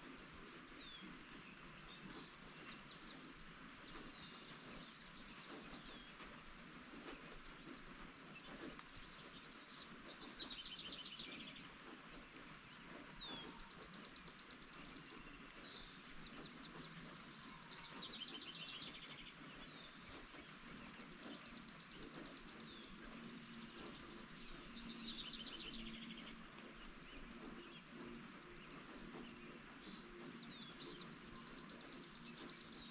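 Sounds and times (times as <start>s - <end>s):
songbirds trilling: 0.0s - 32.9s
steady rain: 0.0s - 32.9s.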